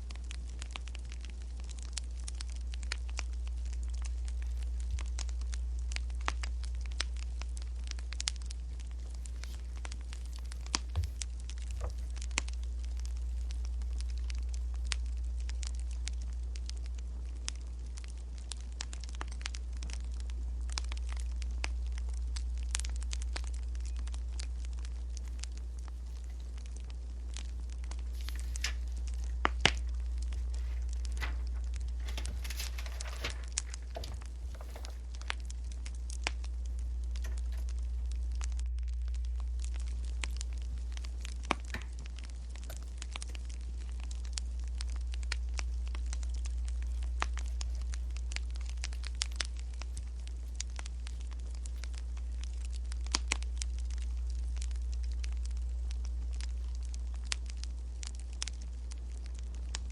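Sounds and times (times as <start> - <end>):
crackling wood fire: 0.0 - 59.9
steady low hum: 0.0 - 59.9
paper rustling: 9.0 - 12.2, 28.0 - 35.5
desk sounds: 30.6 - 35.0.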